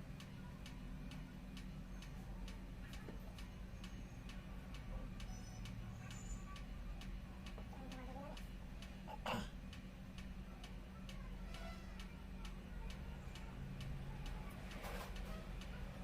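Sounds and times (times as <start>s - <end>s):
regular ticking: 0.0s - 16.0s.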